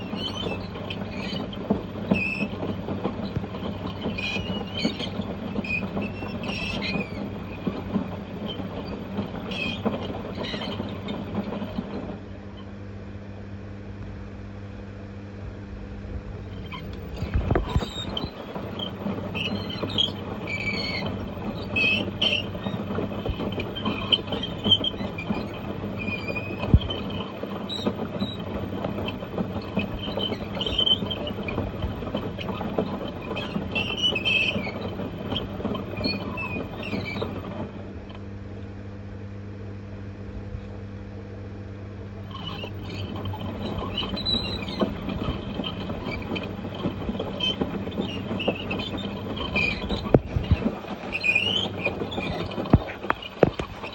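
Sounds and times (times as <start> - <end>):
rough rumbling and high squeals: 0.0 - 12.7, 16.0 - 38.2, 42.0 - 53.9
washing machine motor hum: 0.0 - 53.9.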